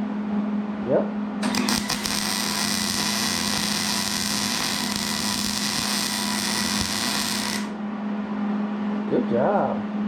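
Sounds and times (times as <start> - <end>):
low steady hum: 0.0 - 8.3
welder arc sizzling: 1.4 - 7.8.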